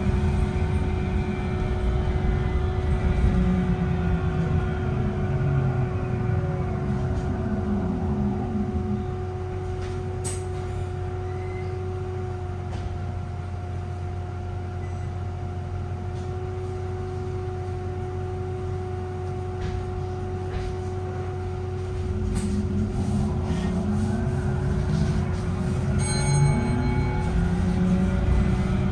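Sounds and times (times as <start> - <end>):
deep rumble: 0.0 - 11.3, 19.5 - 28.9
low hum: 0.0 - 11.8, 19.2 - 28.9
high-pitched bus battery whine: 22.1 - 28.9.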